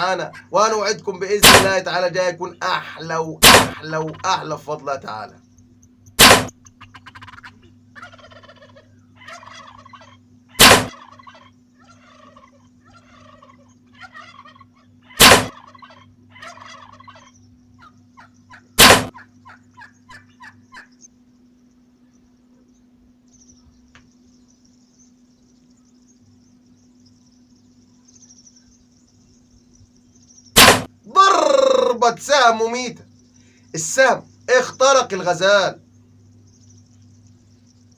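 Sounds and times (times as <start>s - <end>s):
wild turkeys gobbling: 0.0s - 4.5s, 6.2s - 21.1s
loud sharp cracks: 1.4s - 1.8s, 3.4s - 3.8s, 6.2s - 6.6s, 10.6s - 11.0s, 15.2s - 15.6s, 18.8s - 19.2s, 30.6s - 31.0s.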